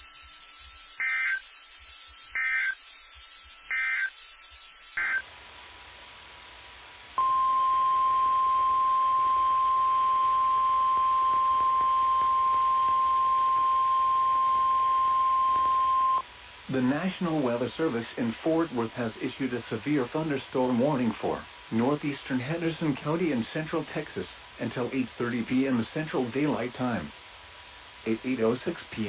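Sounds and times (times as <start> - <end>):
steady warning alarm tone: 0.0 - 5.2, 7.2 - 16.2
warbling data bursts: 0.0 - 5.3.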